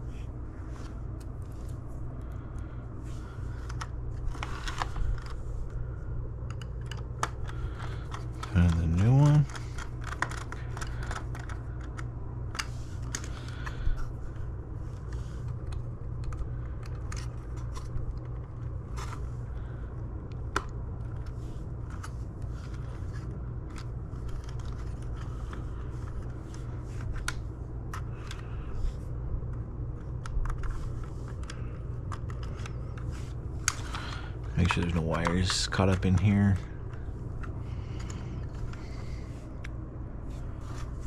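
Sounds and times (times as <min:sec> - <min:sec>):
steady low hum: 0:00.0 - 0:41.0
plastic clicks and scrapes: 0:06.4 - 0:13.8, 0:20.4 - 0:39.8.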